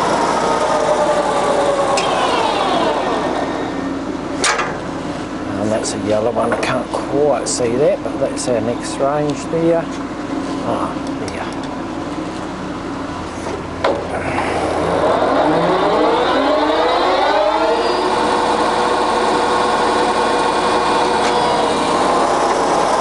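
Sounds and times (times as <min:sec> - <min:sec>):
lathe gear whine: 0:00.0 - 0:11.2, 0:11.8 - 0:23.0
lathe starting click: 0:01.3 - 0:03.7, 0:15.2 - 0:23.0.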